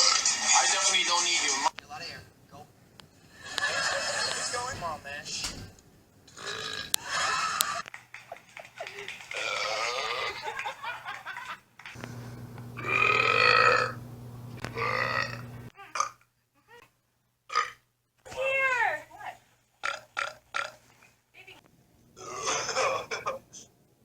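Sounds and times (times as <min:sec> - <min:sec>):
man belching: 0:06.4 - 0:07.2, 0:12.8 - 0:14.0, 0:14.7 - 0:15.4, 0:22.2 - 0:23.2.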